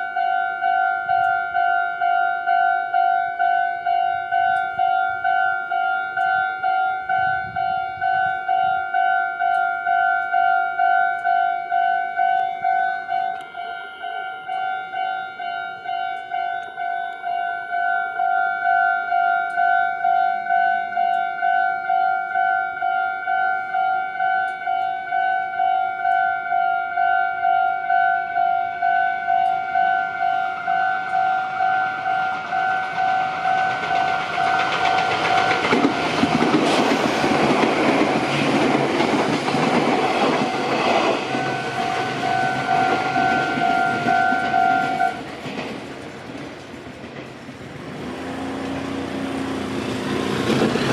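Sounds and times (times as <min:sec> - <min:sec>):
level crossing warning bell: 0:00.0 - 0:45.3
train wheels on rail: 0:28.6 - 0:50.9.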